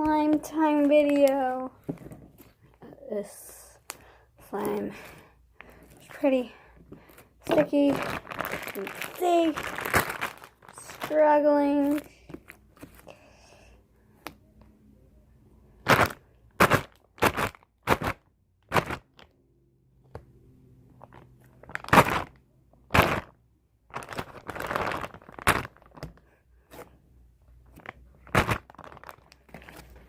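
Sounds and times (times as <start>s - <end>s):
slime popping and squishing: 7.5s - 11.2s.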